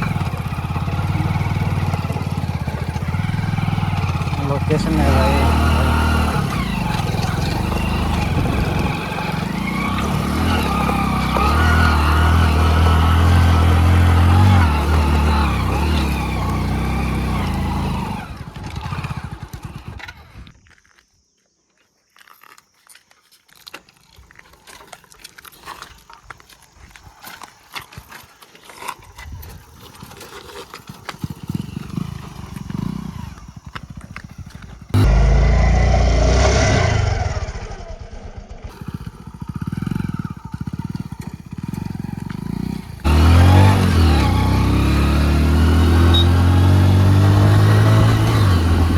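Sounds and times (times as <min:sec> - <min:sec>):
motorcycle engine running: 0:00.0 - 0:20.6, 0:30.8 - 0:48.9.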